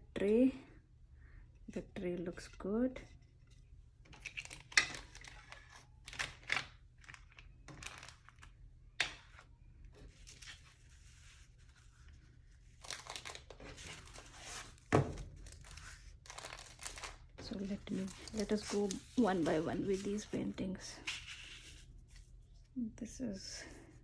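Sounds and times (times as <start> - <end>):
packaging crinkling and rustling: 4.1 - 11.8, 12.6 - 21.8.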